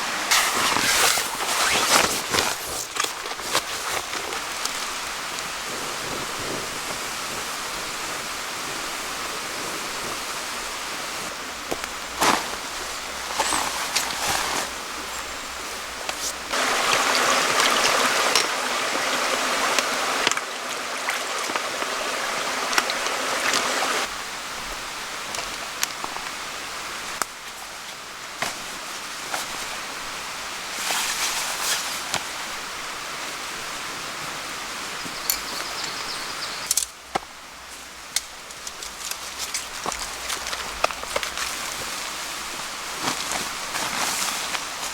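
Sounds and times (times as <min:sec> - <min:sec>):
steady hiss: 0:00.0 - 0:44.9.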